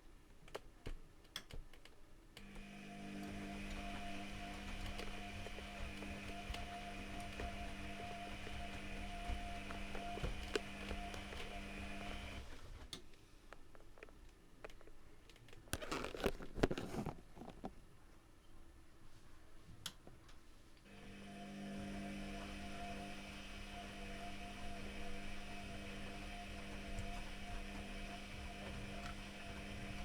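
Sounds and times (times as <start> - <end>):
clicks: 1.2 - 13.2
washing machine drum motor hum: 2.5 - 12.5, 20.9 - 30.0.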